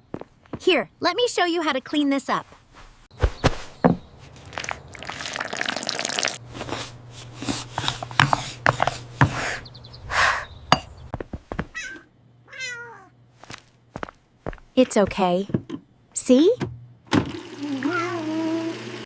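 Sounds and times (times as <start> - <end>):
cat meow: 11.8 - 13.1, 17.8 - 18.3.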